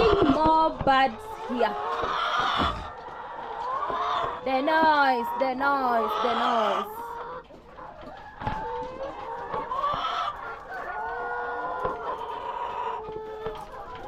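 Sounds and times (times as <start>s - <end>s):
chickens clucking: 0.0s - 14.0s
roosters crowing: 1.2s - 7.1s.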